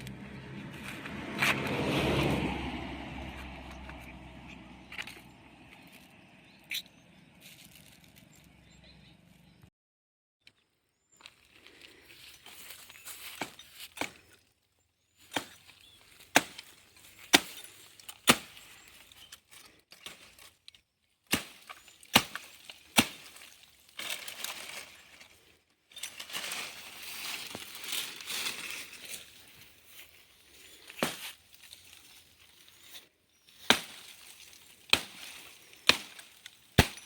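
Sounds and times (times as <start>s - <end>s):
rustling of cut fronds: 7.3s - 8.6s, 10.5s - 37.0s
blade chopping into palm: 16.3s - 16.7s, 17.3s - 18.6s, 21.3s - 23.4s, 31.0s - 31.4s, 33.6s - 34.2s, 34.9s - 37.0s.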